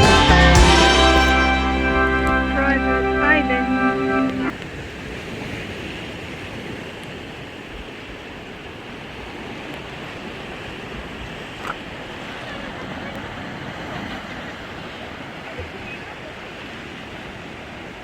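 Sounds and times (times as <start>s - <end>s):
rush of wind and water: 4.5s - 18.0s.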